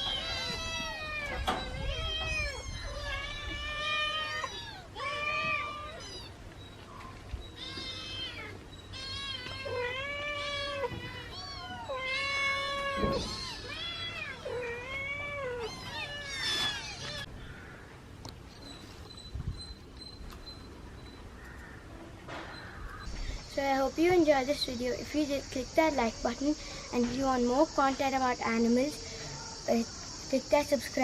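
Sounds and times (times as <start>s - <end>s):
kittens meowing: 0.0s - 6.5s, 7.4s - 17.4s.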